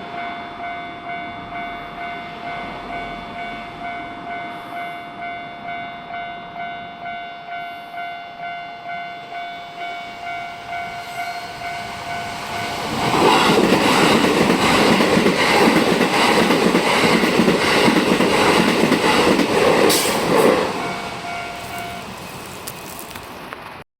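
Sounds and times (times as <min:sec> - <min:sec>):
train passing loudly: 0:00.0 - 0:23.8
level crossing bell ringing: 0:20.8 - 0:22.1.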